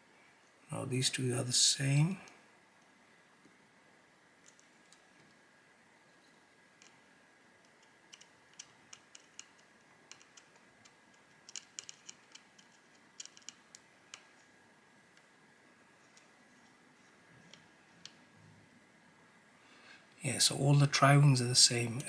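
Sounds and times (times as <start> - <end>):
faint high whine: 0.0 - 7.4, 13.9 - 22.0
small screws and screwdriver clicking: 7.6 - 14.5.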